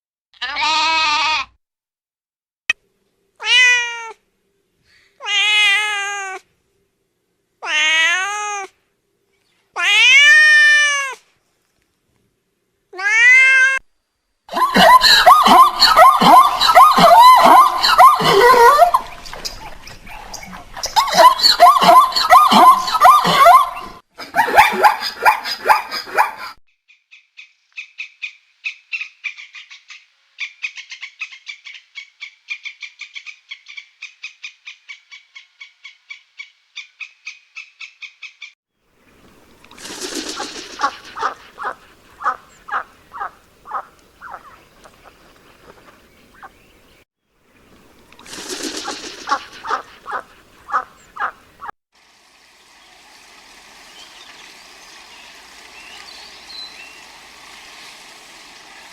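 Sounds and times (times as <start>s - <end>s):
lower rhythmic animal calls: 14.6s - 24.0s, 40.4s - 44.6s, 49.0s - 51.7s.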